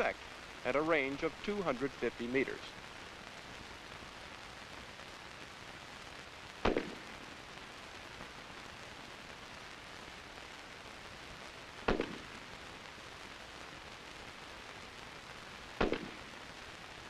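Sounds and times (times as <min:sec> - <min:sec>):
film soundtrack hiss: 0:00.0 - 0:17.0
rifle shots: 0:06.6 - 0:07.2, 0:11.9 - 0:12.4, 0:15.8 - 0:16.4.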